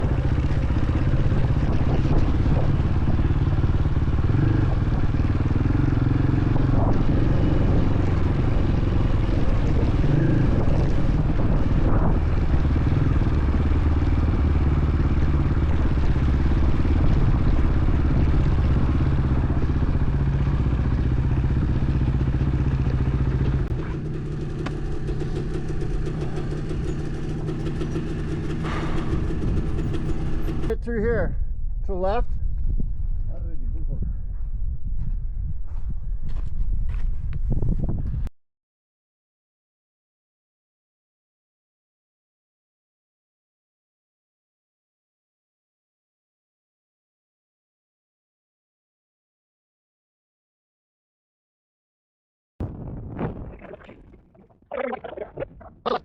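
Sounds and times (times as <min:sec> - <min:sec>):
motorcycle engine running: 0:00.0 - 0:30.7.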